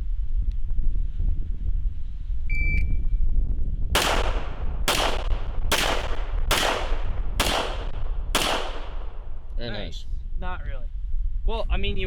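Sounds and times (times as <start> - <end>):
gunshots with echo: 4.0 - 9.5.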